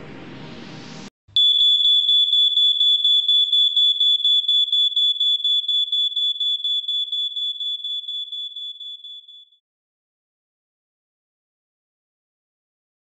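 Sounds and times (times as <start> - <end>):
smoke alarm pulsing tone: 1.4 - 9.6.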